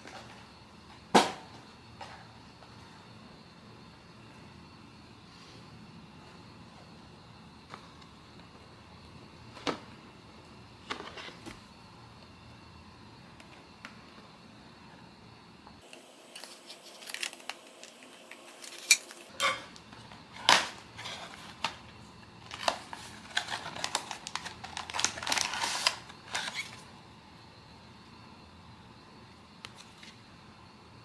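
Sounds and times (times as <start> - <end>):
plastic and card crinkling: 16.3 - 19.3, 22.4 - 26.9.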